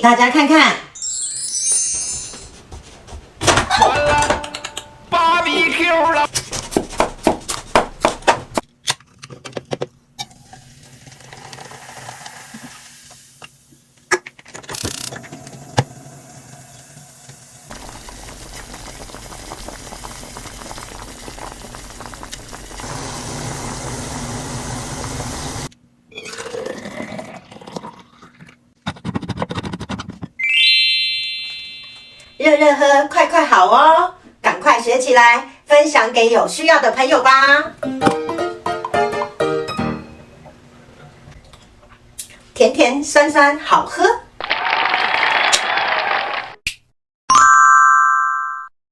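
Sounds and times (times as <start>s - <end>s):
liquid pouring and fizzing: 10.2s - 13.2s, 15.2s - 25.2s, 26.1s - 28.6s
short bright chime: 30.4s - 32.4s.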